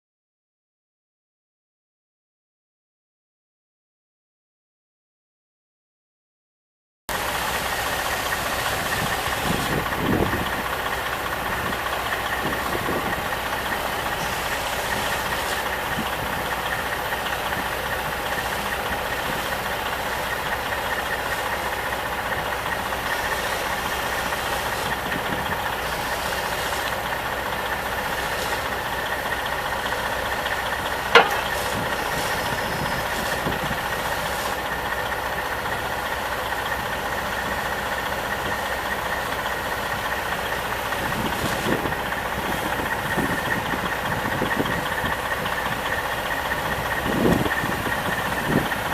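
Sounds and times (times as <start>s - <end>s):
diesel engine idling: 7.1s - 48.9s
sharp click: 31.2s - 31.7s.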